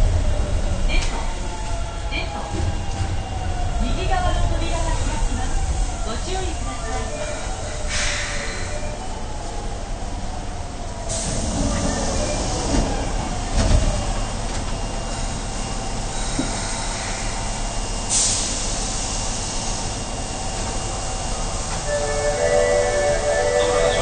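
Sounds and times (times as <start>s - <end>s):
steady train rumble: 0.0s - 24.0s
train doors shutting with a thud: 11.0s - 14.8s, 16.0s - 19.8s.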